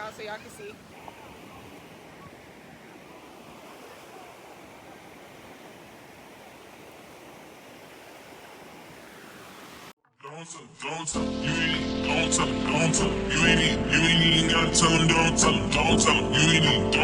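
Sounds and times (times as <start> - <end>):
ocean surf washing on beach: 0.0 - 10.0.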